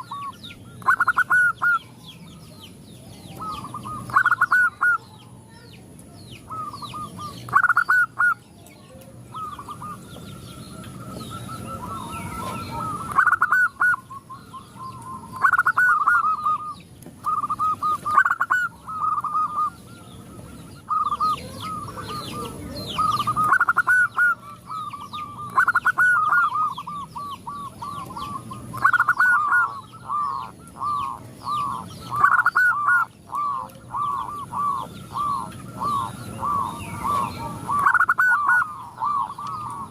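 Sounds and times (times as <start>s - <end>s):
doves cooing: 0.0s - 39.9s
small birds chirping: 0.0s - 39.9s.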